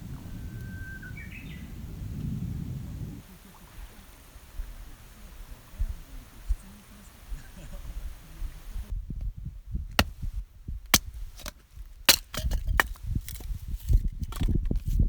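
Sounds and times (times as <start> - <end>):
low thuds: 8.9 - 14.8
wood chopping knocks: 10.0 - 10.2, 11.0 - 13.5.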